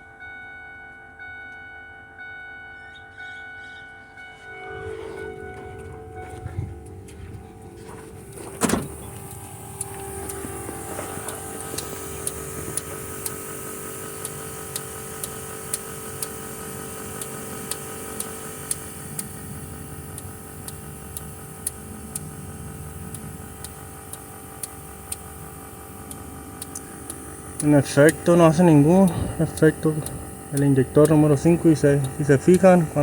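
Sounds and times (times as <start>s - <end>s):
steady hum: 4.4s - 33.0s
fuel injector solenoids clicking: 7.1s - 33.0s.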